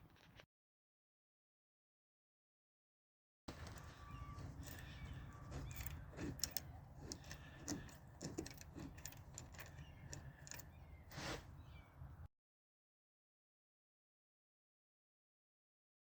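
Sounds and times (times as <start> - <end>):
metallic clicks of hand tools: 5.7 - 10.7.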